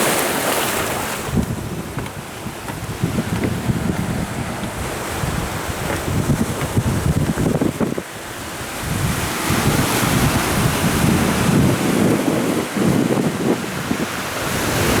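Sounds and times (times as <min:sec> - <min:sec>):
sea waves washing ashore: 0:00.0 - 0:15.0
wind buffeting microphone: 0:01.1 - 0:15.0.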